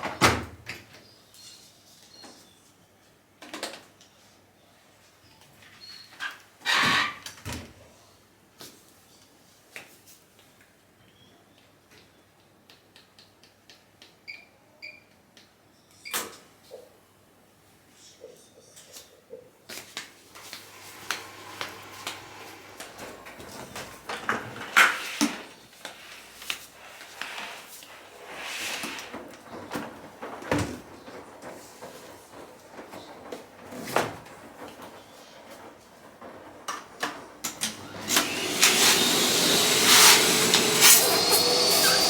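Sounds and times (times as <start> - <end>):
rustling and clattering: 19.8 - 39.4.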